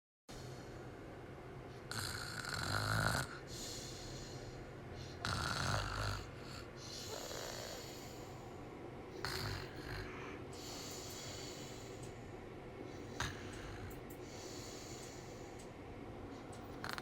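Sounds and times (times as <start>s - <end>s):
person snoring: 1.9s - 8.4s, 9.2s - 12.1s, 13.0s - 15.6s, 16.7s - 17.0s.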